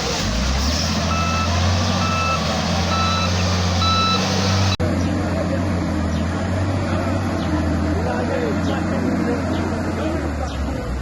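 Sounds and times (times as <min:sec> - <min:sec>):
engine drone: 0:00.0 - 0:11.0
reversing alarm beeping: 0:01.1 - 0:04.8.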